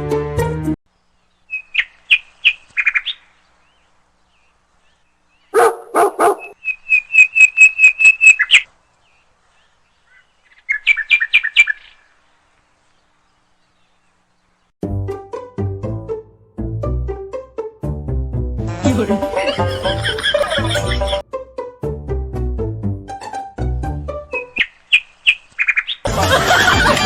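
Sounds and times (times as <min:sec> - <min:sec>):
pet barking: 0:05.5 - 0:06.6
pet squeaking and chirping: 0:05.6 - 0:08.6.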